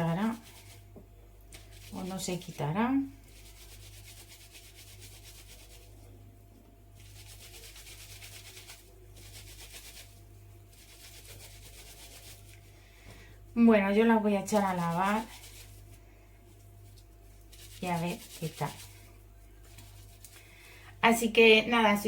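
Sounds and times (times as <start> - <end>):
cloth being scrubbed by hand: 0.0 - 0.9, 1.6 - 6.0, 7.0 - 12.7, 14.4 - 20.4.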